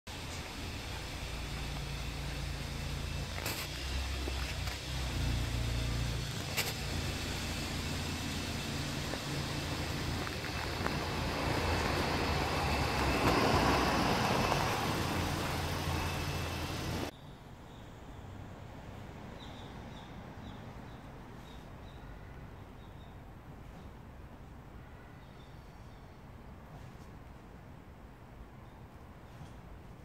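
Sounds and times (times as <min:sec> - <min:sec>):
vehicle engine hum: 0:00.1 - 0:17.1
road noise: 0:00.1 - 0:30.0.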